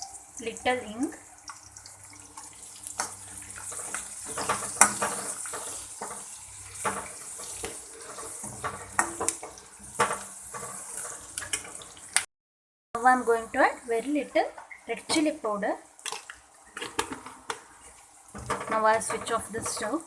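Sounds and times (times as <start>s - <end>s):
spices sizzling in hot oil: 0.0s - 12.3s, 13.0s - 20.0s
spoon scraping a pan: 3.0s - 12.0s, 17.8s - 20.0s.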